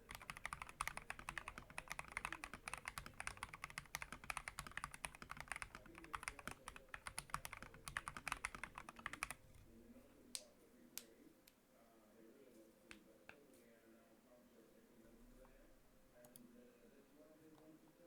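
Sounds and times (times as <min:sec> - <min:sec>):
mechanical keyboard typing: 0:00.0 - 0:09.4.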